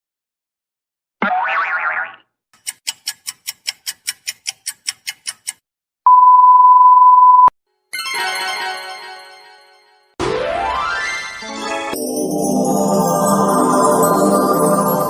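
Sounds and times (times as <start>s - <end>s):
click: 2.6s - 5.6s
sharp ticks: 2.6s - 5.6s
censor beep: 6.1s - 7.5s.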